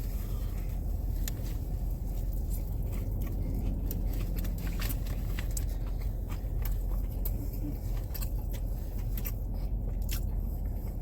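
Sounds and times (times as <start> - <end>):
person chewing crispy food: 0.0 - 11.0.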